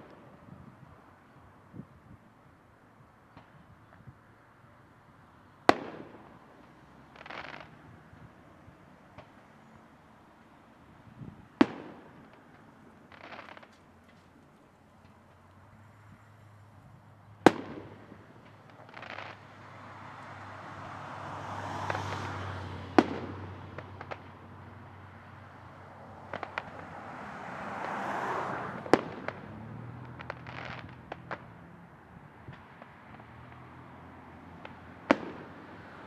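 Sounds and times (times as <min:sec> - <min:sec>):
fireworks crackling: 0:05.7 - 0:22.4, 0:23.0 - 0:24.6, 0:26.1 - 0:31.6, 0:34.5 - 0:36.0
small pops: 0:26.3 - 0:26.8.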